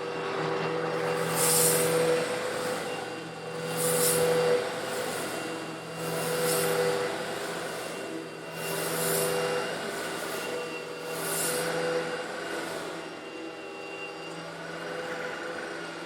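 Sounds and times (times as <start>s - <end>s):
vacuum cleaner running: 0.0s - 16.0s
gritty hiss of granules sucked in: 1.2s - 2.0s.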